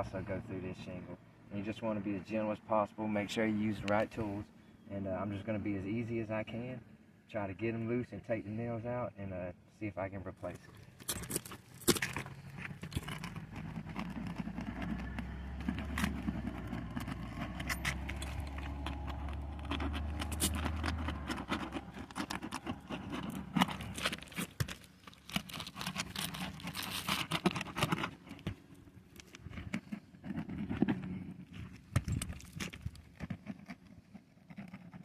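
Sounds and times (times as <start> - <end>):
vehicle engine humming: 10.5 - 33.3
hand tools scraping roof shingles: 11.0 - 35.0.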